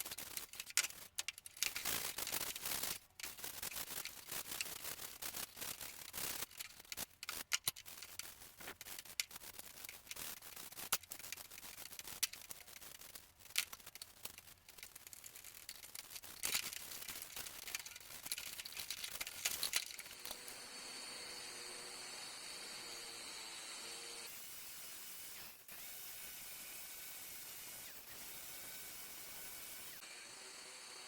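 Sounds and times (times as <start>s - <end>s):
sharp clicks and knocks: 0.0s - 20.5s.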